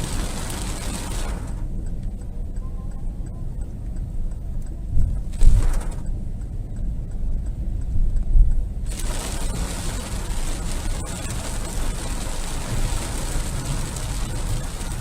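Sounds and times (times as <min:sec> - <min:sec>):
heavy rain hissing: 0:08.9 - 0:15.0.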